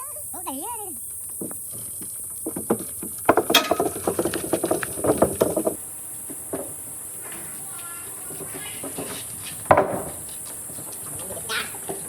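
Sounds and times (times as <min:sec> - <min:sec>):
clatter of knocks and bangs: 0:01.4 - 0:07.4, 0:08.3 - 0:10.2.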